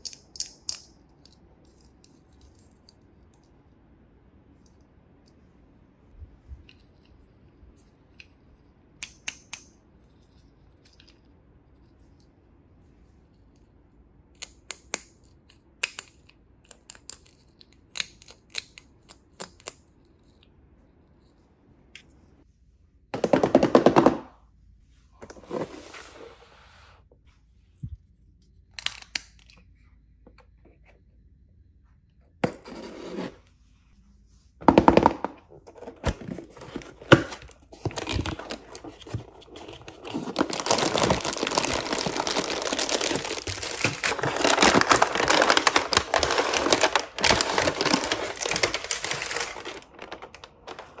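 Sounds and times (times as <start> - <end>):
toy packaging rustling: 34.6 - 51.0
dense crackling of packaging: 34.9 - 51.0.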